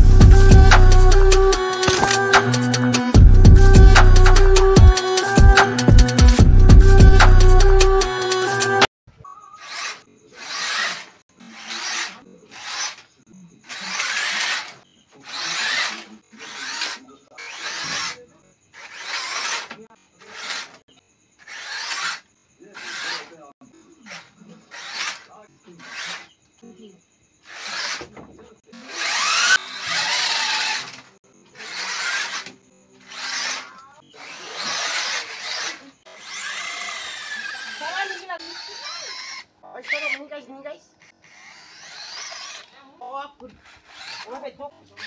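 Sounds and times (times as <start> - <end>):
small electric motors whirring: 0.0 - 8.8, 9.5 - 26.4, 27.4 - 40.4, 41.0 - 45.0
rasping scraping strokes: 9.5 - 20.8, 21.4 - 23.4, 24.0 - 26.3, 27.4 - 28.2, 28.8 - 40.2, 41.0 - 42.8, 43.5 - 45.0.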